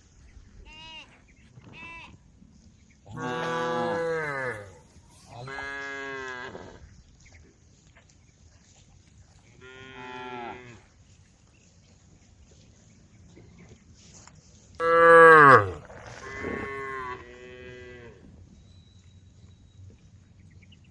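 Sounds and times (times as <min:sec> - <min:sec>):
cow mooing: 0:03.2 - 0:04.8, 0:14.8 - 0:18.2.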